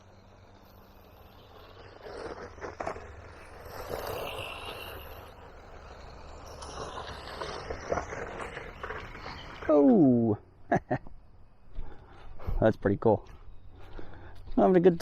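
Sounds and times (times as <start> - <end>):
rc car scraping and rattling: 0.0 - 9.7.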